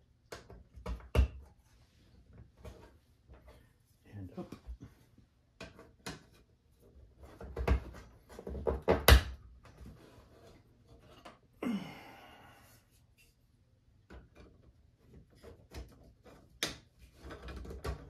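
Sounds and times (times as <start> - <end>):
plastic parts knocking and clicking: 0.1 - 1.6, 7.1 - 9.8, 14.0 - 18.0.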